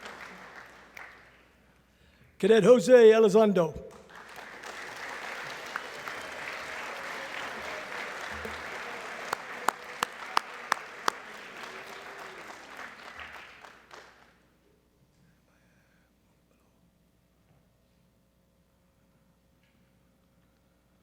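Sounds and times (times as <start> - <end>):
audience applauding: 0.0 - 1.5, 3.9 - 14.4.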